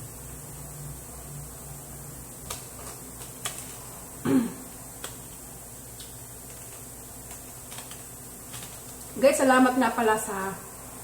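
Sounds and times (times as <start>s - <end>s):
voiced throat sound: 4.2s - 4.6s.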